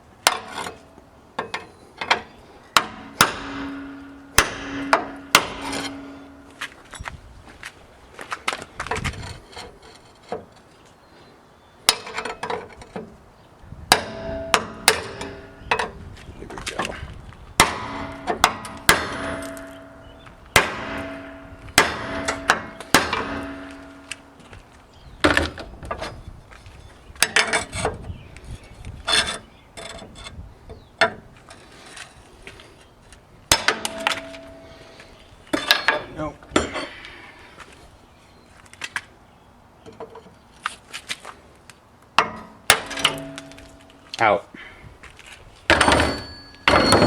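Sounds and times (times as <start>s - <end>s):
hammer striking steel frame: 0.2s - 6.9s, 13.9s - 16.0s, 17.6s - 24.6s, 33.5s - 37.0s, 42.2s - 44.2s, 45.7s - 47.0s.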